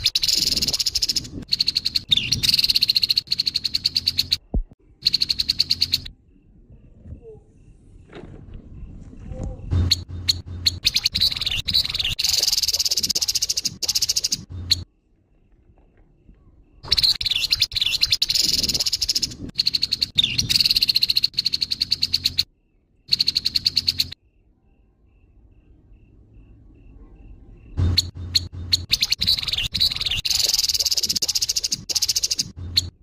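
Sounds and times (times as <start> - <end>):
bird harsh rattling calls: 0.0 - 4.4, 5.0 - 6.1, 9.8 - 14.8, 16.8 - 22.5, 23.1 - 24.2, 27.8 - 33.0.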